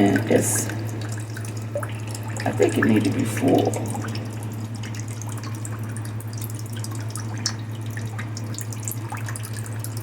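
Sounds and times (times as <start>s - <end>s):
low pump hum: 0.0s - 10.0s
water dripping into plastic bowl: 0.0s - 10.0s.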